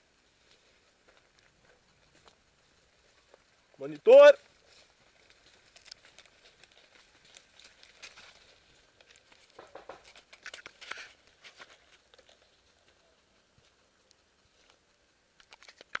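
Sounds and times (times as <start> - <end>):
faint rustling and crackling: 0.0 - 16.0.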